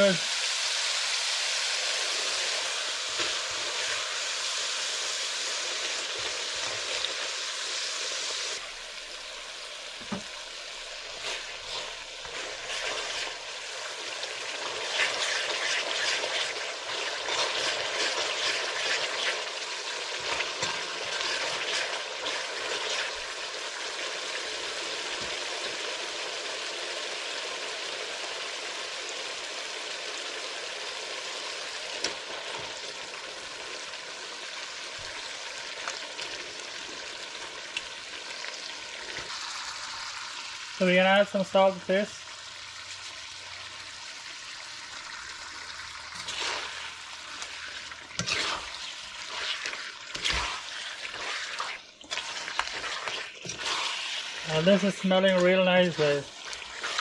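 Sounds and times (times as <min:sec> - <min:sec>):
food sizzling in hot oil: 0:00.0 - 0:57.0
spoon scraping a pan: 0:46.1 - 0:57.0.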